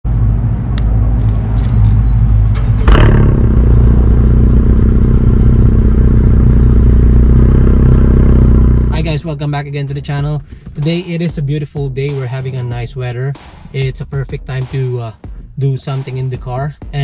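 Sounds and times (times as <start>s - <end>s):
car engine running: 0.1s - 9.4s.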